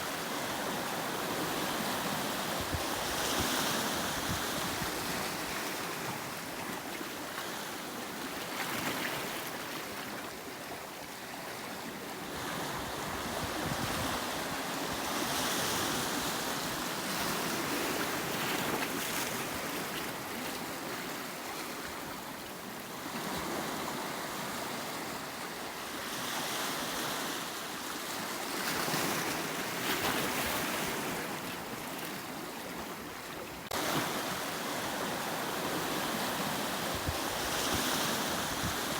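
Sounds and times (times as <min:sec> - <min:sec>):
wind: 0:00.0 - 0:38.9
waves breaking on rocky shore: 0:33.6 - 0:38.9.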